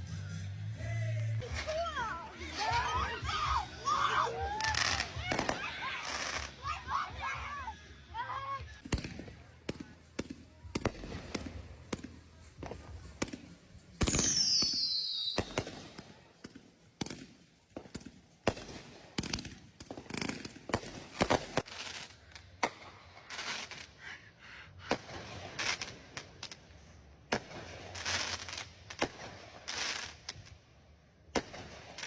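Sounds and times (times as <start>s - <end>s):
fireworks crackling: 0.0s - 24.2s, 24.9s - 30.7s, 31.3s - 32.0s
fireworks bangs and booms: 4.4s - 6.6s, 8.8s - 24.0s, 24.9s - 30.6s, 31.3s - 32.0s.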